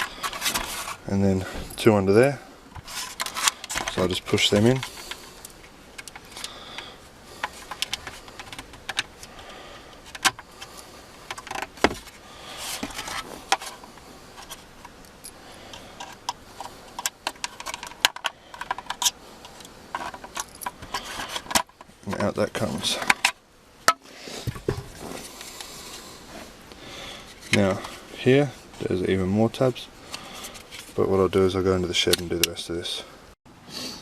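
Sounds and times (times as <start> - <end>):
plastic clicks and rattles: 4.7 - 9.3, 15.7 - 21.9.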